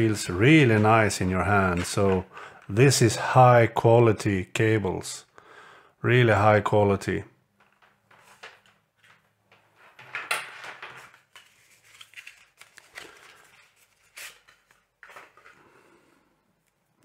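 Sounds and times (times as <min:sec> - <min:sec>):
packaging rustling: 0:00.0 - 0:02.8, 0:11.0 - 0:15.7.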